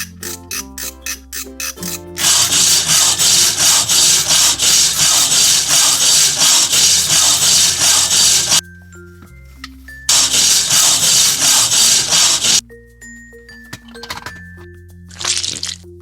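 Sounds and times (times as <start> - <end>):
background music: 0.0 - 2.2
loud rhythmic rasping scraping: 0.0 - 8.6, 10.1 - 12.6.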